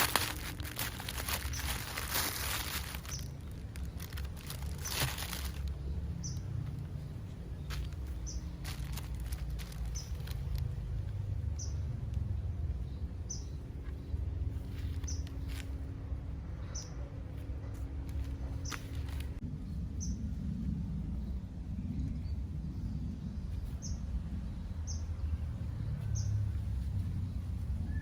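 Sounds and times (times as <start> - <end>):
plastic packaging crinkling: 0.0 - 5.8, 7.7 - 10.8, 14.9 - 15.6, 18.1 - 19.4
steady low rumble: 0.0 - 28.0.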